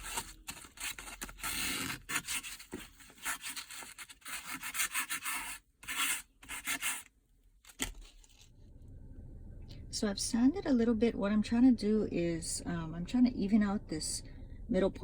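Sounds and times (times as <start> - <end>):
sandpaper rubbing on plastic: 0.0 - 7.1.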